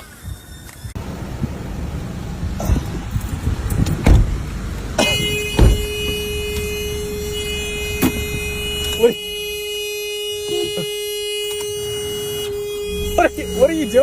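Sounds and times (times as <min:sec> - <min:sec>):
car rumble: 0:00.0 - 0:14.0
car horn held note: 0:05.0 - 0:14.0
knocks: 0:05.5 - 0:06.2.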